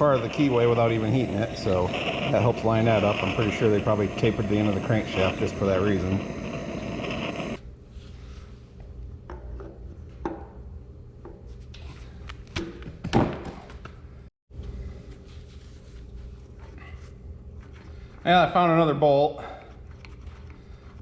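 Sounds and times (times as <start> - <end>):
hiss: 0.0 - 7.6.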